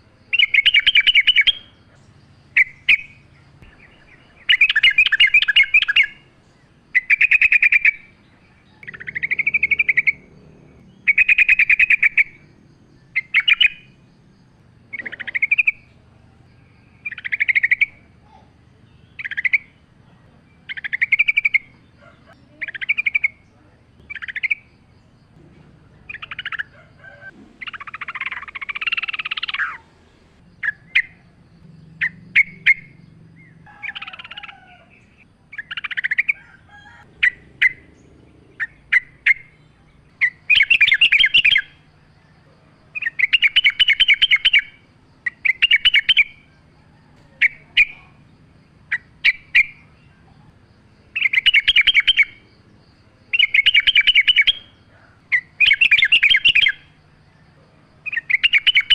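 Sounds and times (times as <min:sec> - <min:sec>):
bulbul chirps and bubbling chatters: 0:14.9 - 0:33.2.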